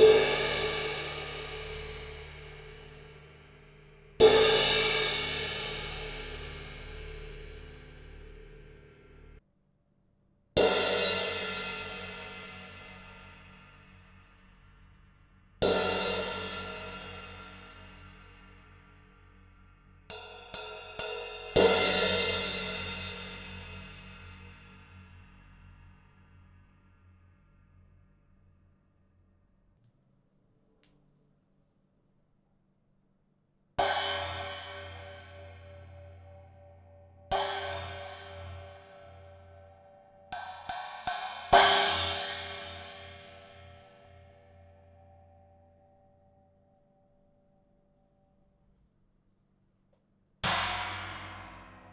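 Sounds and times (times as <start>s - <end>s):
cymbals struck and ringing: 0.0s - 2.8s, 33.8s - 43.7s
cymbal struck and ringing: 0.0s - 3.3s, 4.2s - 8.6s, 20.1s - 25.0s, 33.8s - 45.8s, 50.4s - 51.9s.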